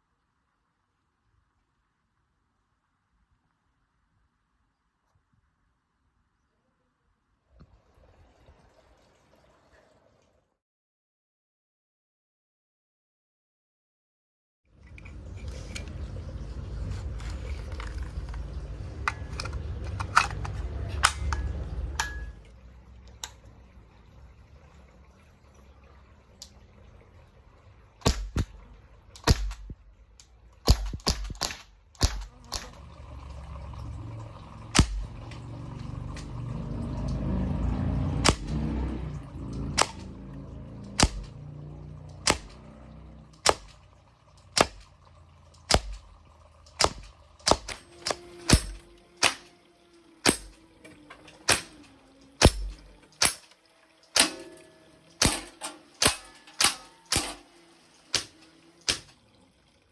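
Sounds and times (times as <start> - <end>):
air rifle pops: 28.0 - 28.5, 29.2 - 29.8, 30.7 - 32.8, 41.0 - 41.3, 45.7 - 46.1, 46.8 - 49.5, 55.2 - 57.4.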